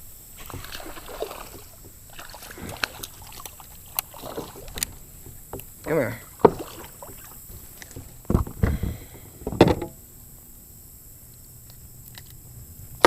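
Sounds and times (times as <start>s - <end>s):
knocks and thumps on a kayak: 0.4s - 10.0s.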